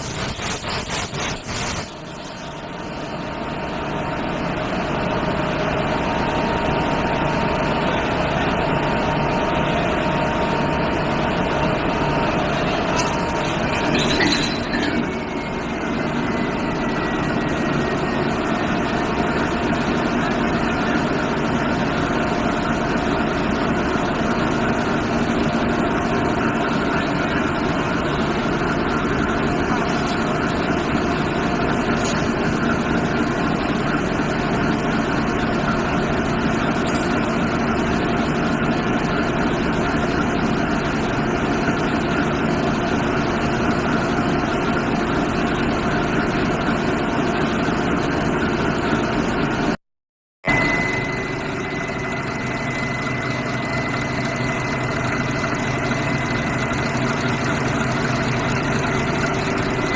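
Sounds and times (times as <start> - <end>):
ship engine idling: 50.5 - 59.9.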